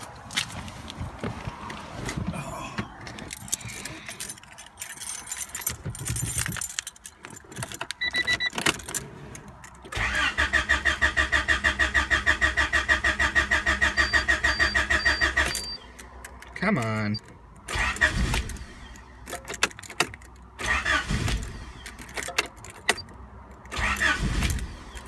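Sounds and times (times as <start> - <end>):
keys jangling: 3.2 - 8.0
car starter cranking engine: 8.1 - 25.0.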